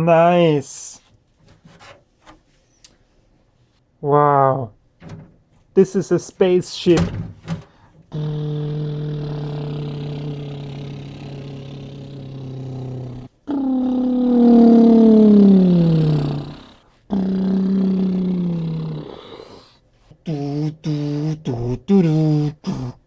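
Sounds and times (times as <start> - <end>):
man's sung exclamations of amazement: 8.1 - 13.2.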